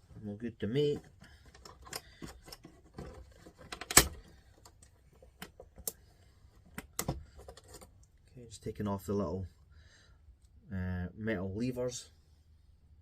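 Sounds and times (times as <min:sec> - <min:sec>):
small parts clicking and rattling: 0:01.0 - 0:08.1.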